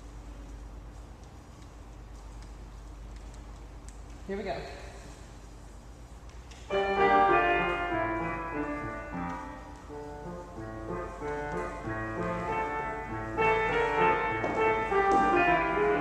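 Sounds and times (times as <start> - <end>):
instrumental ballet class music: 5.5 - 16.0.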